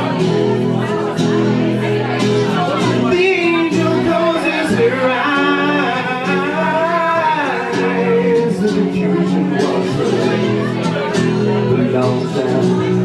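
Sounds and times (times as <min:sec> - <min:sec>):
guitar: 0:00.0 - 0:13.0
rock band playing live: 0:00.0 - 0:13.0
person singing: 0:02.6 - 0:13.0.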